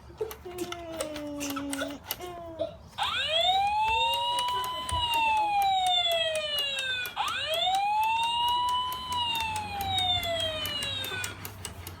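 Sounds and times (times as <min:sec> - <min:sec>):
electronic siren wail from toy speaker: 0:03.0 - 0:11.4.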